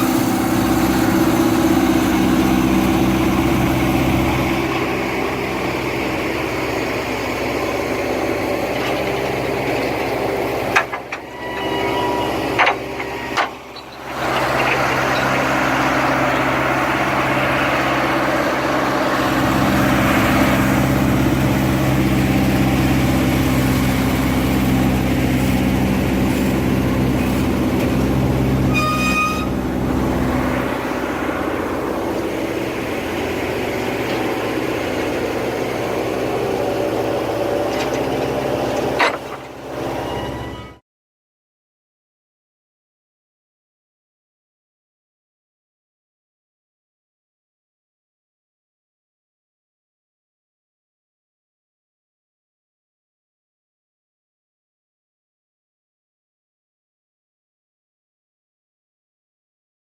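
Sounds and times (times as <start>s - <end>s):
heavy machinery engine running: 0.0s - 40.8s
high whistle-like tone: 28.7s - 29.6s.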